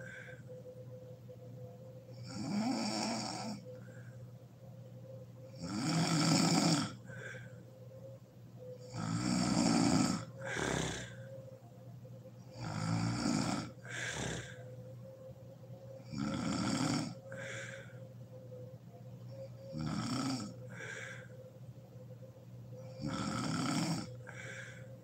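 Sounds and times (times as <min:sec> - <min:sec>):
faint steady hum: 0:00.0 - 0:25.0
woman snoring: 0:02.1 - 0:03.8, 0:05.5 - 0:07.4, 0:08.8 - 0:11.3, 0:12.5 - 0:14.7, 0:16.0 - 0:17.9, 0:19.7 - 0:21.3, 0:22.8 - 0:24.9.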